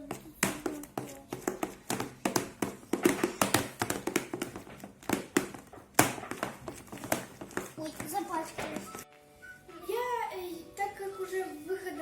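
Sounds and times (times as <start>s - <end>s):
spoon stirring slime: 0.0s - 9.1s.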